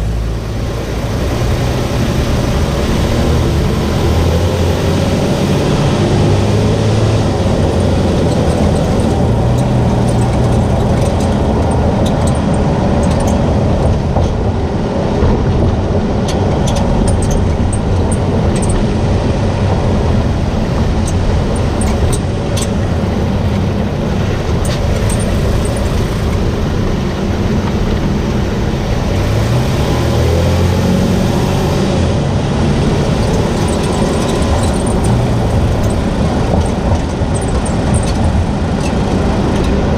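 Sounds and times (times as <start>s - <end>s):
road and engine noise: 0.0s - 39.9s.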